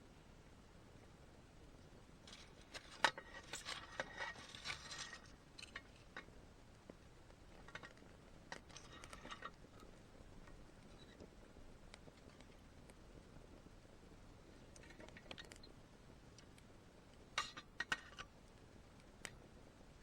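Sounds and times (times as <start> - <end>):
rustling: 2.2 - 6.3.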